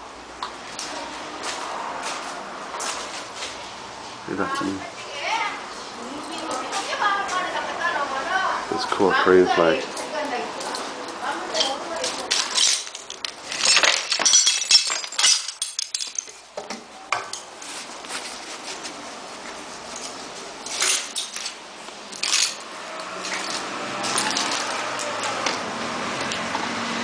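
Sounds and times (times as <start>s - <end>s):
sharp clinks and knocks: 11.6s - 17.5s.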